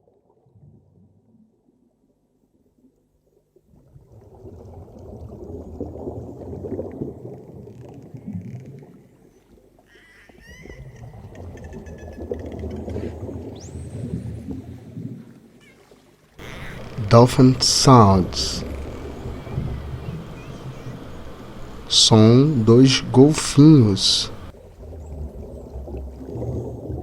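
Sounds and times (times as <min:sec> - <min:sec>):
dolphin clicks: 0:16.4 - 0:24.5
dolphins whistling: 0:16.4 - 0:24.5
water rumbling: 0:16.4 - 0:27.0.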